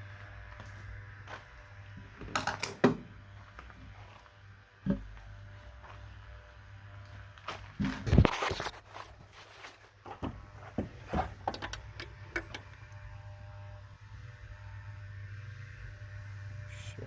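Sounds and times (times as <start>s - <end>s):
steady low hum: 0.0s - 17.0s
knocks and clunks: 10.0s - 12.7s.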